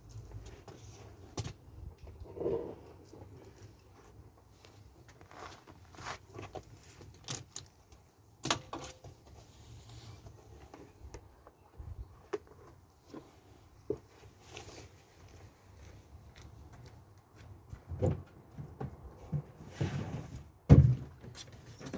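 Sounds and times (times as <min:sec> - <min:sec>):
tools clicking and clanking: 0:06.4 - 0:09.2.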